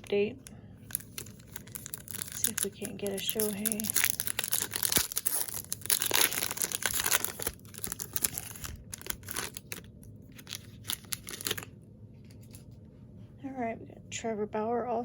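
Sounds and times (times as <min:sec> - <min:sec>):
foil wrapper crinkling: 0:00.0 - 0:11.7
cards rustling and ticking: 0:00.8 - 0:11.7.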